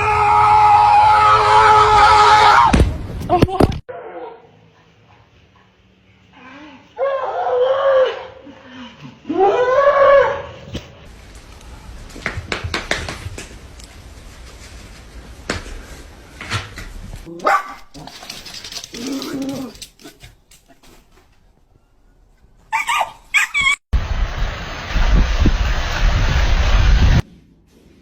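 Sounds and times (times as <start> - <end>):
dog barking and whining: 17.3 - 20.3, 22.7 - 23.8
dog yipping: 17.4 - 17.9, 22.7 - 23.8.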